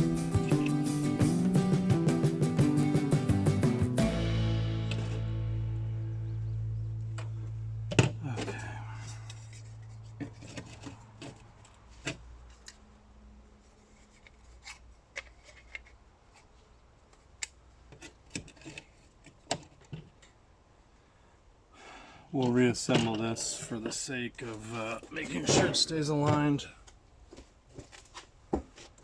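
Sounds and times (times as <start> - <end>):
background music: 0.0 - 6.8
plastic parts and tools clicking: 13.9 - 20.4.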